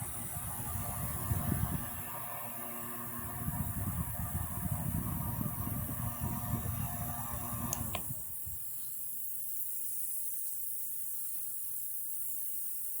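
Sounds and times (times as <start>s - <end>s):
small appliance hissing: 0.0s - 9.3s
quick clicks: 7.3s - 8.2s.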